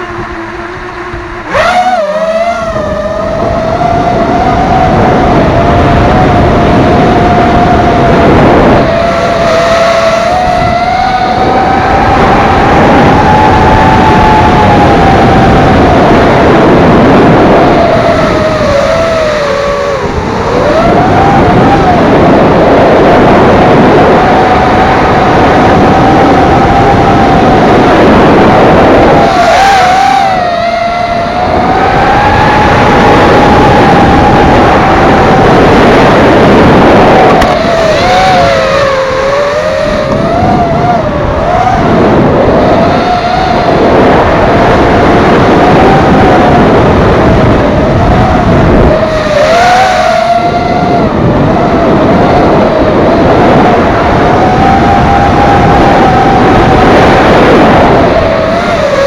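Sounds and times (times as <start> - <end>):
quadcopter motors whining: 0.0 - 59.0
rushing wind noise: 0.0 - 59.0.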